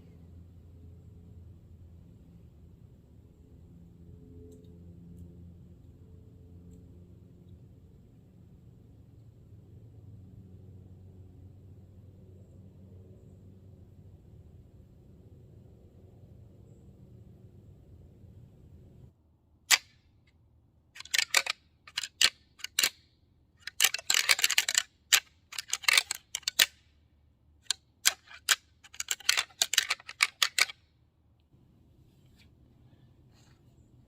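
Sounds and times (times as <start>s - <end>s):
deer rattling call clattering: 21.0s - 23.0s, 23.6s - 26.9s, 27.6s - 30.8s.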